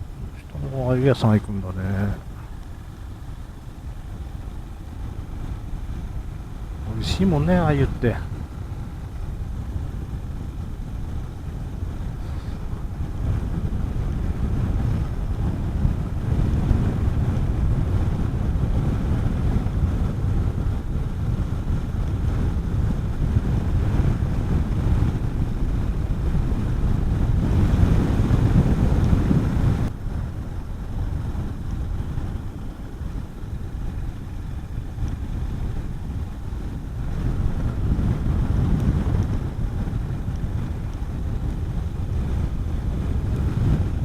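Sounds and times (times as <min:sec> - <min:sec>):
wind rushing over microphone: 0:00.0 - 0:44.0.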